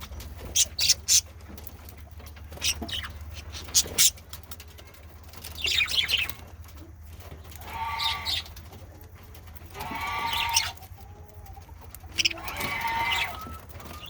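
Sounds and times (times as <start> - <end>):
budgerigars chirping: 0.0 - 1.3, 2.5 - 4.2, 5.5 - 6.4, 9.8 - 10.8, 12.0 - 14.0
scratchy warbling calls: 0.0 - 1.3, 2.5 - 4.2, 9.8 - 10.8, 12.0 - 14.0.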